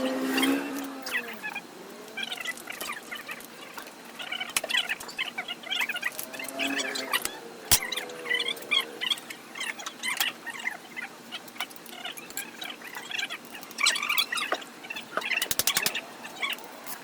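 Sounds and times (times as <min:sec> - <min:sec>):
birds chirping: 0:00.0 - 0:17.0
sharp clicks: 0:15.4 - 0:16.0.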